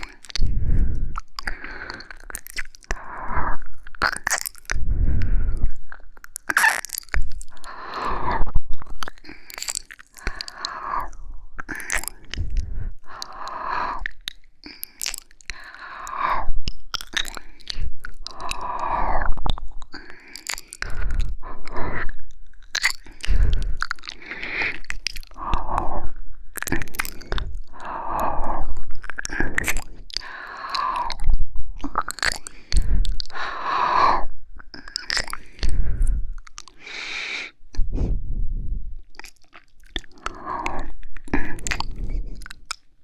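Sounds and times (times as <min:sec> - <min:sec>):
wet licking and kissing: 0:34.8 - 0:35.7, 0:39.0 - 0:42.9.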